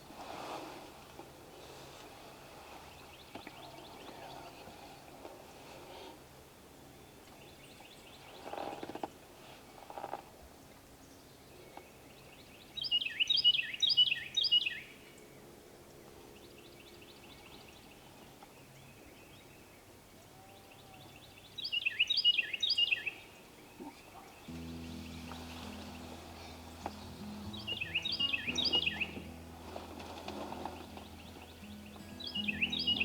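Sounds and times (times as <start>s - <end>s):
songbird singing: 24.3s - 33.0s
low background music: 24.5s - 33.0s.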